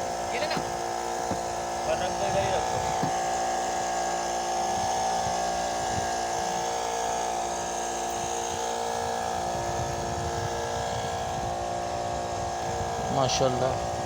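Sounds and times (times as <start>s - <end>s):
boat engine droning: 0.0s - 14.0s.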